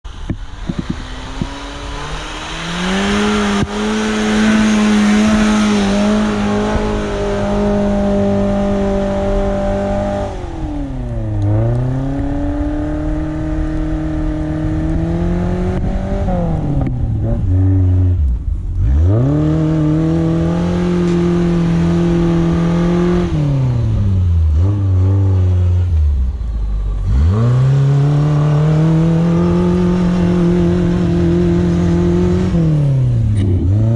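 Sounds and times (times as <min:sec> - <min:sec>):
car engine revving: 0:00.0 - 0:33.9.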